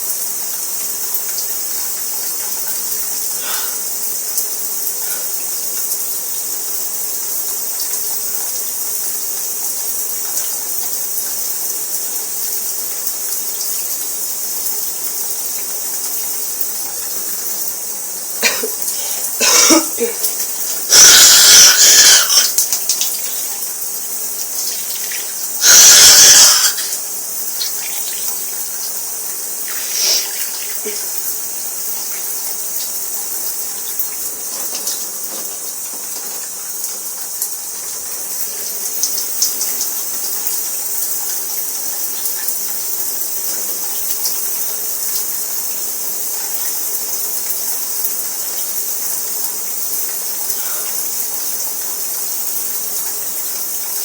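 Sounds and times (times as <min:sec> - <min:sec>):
shower water running: 0:00.0 - 0:54.0
person sneezing: 0:03.4 - 0:03.8, 0:18.4 - 0:22.6, 0:25.6 - 0:27.0, 0:29.8 - 0:31.1.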